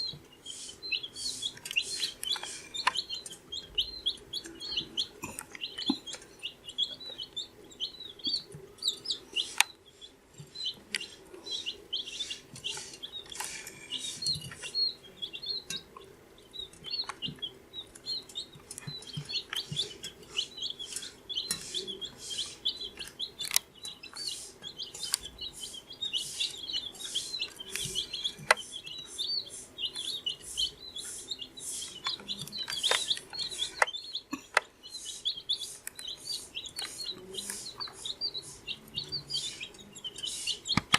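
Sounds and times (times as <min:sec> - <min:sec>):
chicks peeping: 0:00.0 - 0:40.9.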